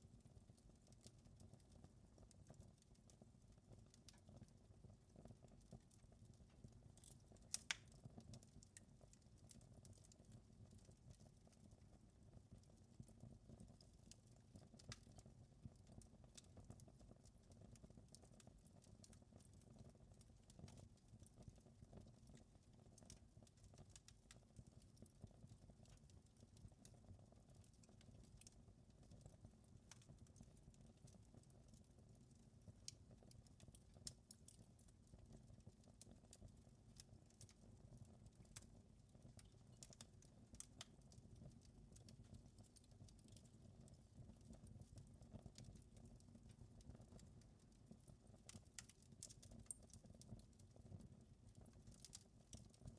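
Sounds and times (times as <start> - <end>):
wood fire crackling: 0.0 - 52.9
fire pops and snaps: 6.5 - 10.8, 38.3 - 47.4, 48.3 - 52.9.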